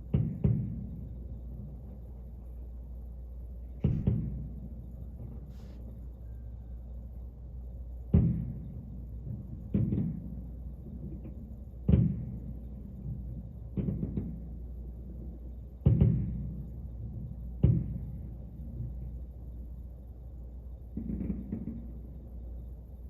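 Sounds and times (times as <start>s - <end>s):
fireworks booming: 0.0s - 2.0s, 3.6s - 6.0s, 8.0s - 19.1s, 20.9s - 22.5s.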